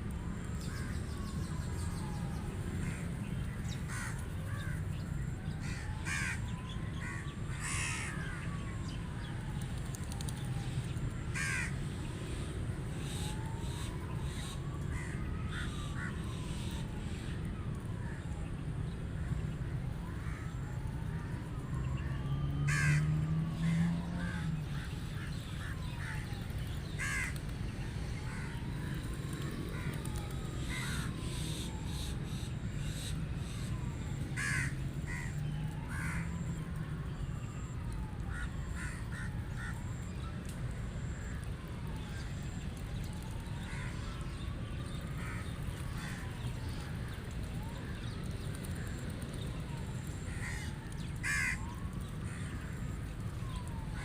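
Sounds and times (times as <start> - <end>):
rook cawing: 3.9 - 4.8, 5.6 - 8.5, 11.4 - 11.8, 14.9 - 16.1, 22.7 - 27.4, 29.7 - 30.0, 30.7 - 31.5, 34.4 - 36.5, 38.3 - 40.0, 43.6 - 44.0, 45.2 - 46.3, 50.3 - 52.5.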